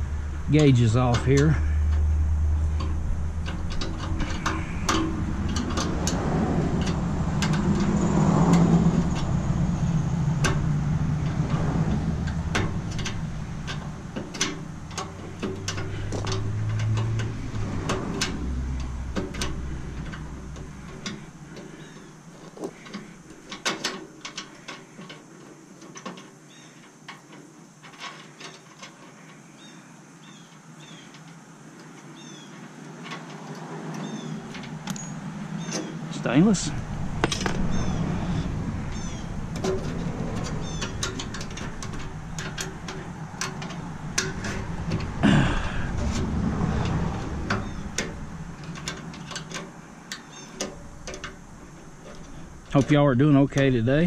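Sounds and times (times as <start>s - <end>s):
low rumble: 0.0s - 22.0s, 36.4s - 49.3s.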